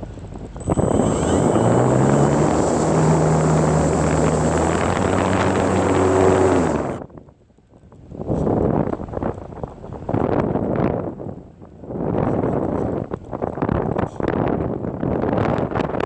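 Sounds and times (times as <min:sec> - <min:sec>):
model plane motor and propeller: 0:00.6 - 0:07.0.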